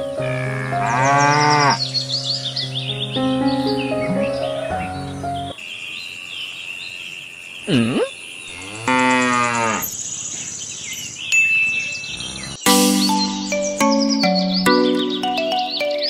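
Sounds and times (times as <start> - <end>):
cow mooing: 0.2 - 1.8, 7.7 - 9.9.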